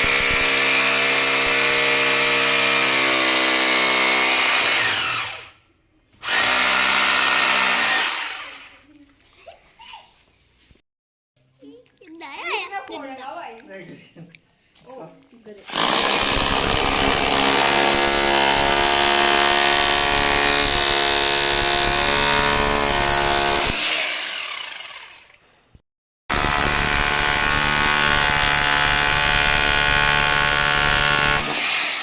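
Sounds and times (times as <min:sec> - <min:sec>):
electric drill whining: 0:00.0 - 0:05.6, 0:06.2 - 0:08.8, 0:15.7 - 0:25.4.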